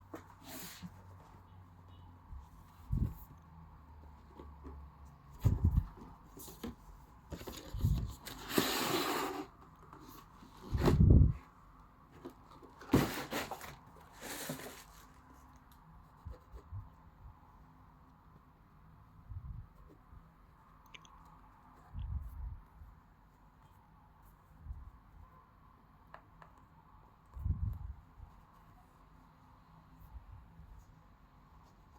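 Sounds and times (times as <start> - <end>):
cardboard rustling: 4.1 - 11.4, 12.1 - 15.3
low thumps of box: 5.4 - 6.0.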